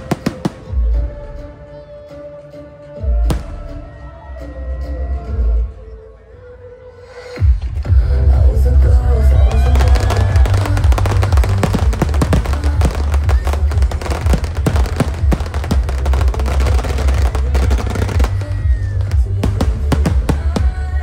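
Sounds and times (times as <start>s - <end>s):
fireworks bangs and crackles: 0.0s - 1.0s, 9.4s - 21.0s
loud music with heavy bass: 7.4s - 21.0s.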